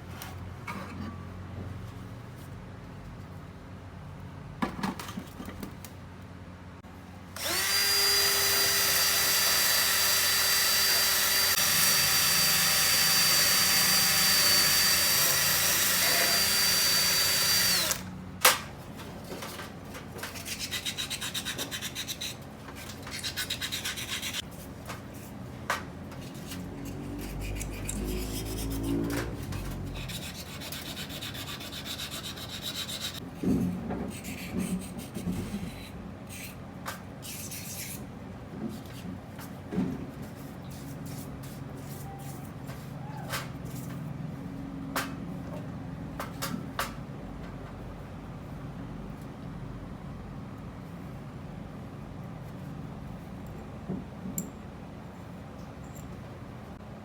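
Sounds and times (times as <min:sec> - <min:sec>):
electric power tool whining: 0:07.4 - 0:18.1.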